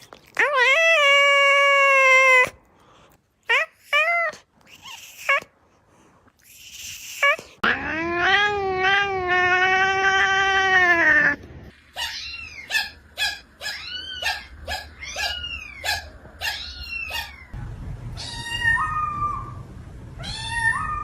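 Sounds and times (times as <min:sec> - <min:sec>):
low rumble: 0:17.4 - 0:21.0.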